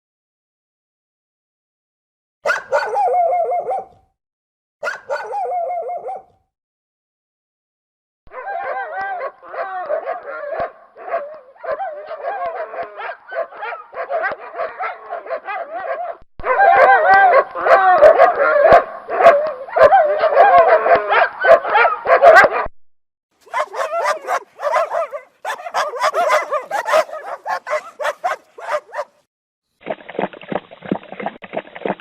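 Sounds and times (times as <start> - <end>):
dog barking and yelping: 2.4 - 4.0, 4.8 - 6.4, 8.3 - 22.7, 23.4 - 29.3.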